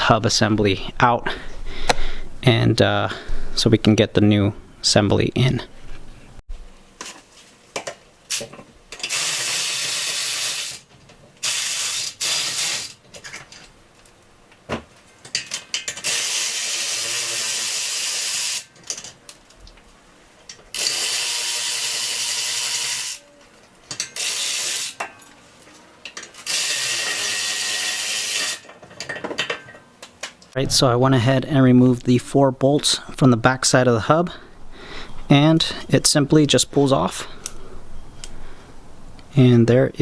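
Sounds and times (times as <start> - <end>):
power ratchet hissing: 9.0 - 13.0, 16.0 - 18.7, 20.8 - 23.2, 24.2 - 25.0, 26.4 - 28.7
tool handling clicks and clanks: 13.0 - 16.1, 23.8 - 25.4, 28.4 - 30.5.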